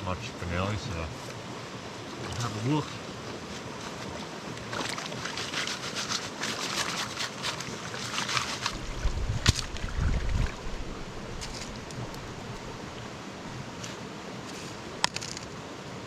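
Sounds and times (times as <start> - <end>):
river water sloshing: 1.2 - 15.4
small splashes: 3.8 - 13.7
gravel rattling in a sieve: 4.8 - 8.8
low rumble: 8.8 - 13.7.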